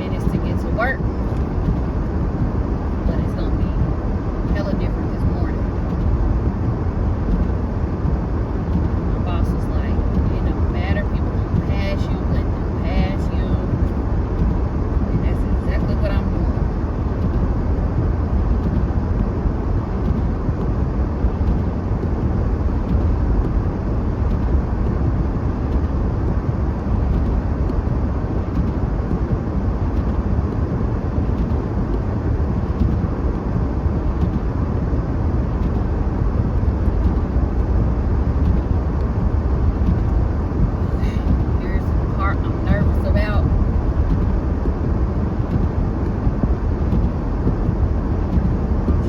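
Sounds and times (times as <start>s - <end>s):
car driving interior rumble: 0.0s - 49.0s.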